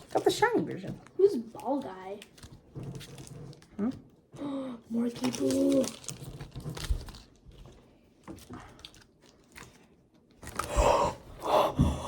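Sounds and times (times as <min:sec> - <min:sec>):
person gasping and breathing hard: 0:10.6 - 0:12.0.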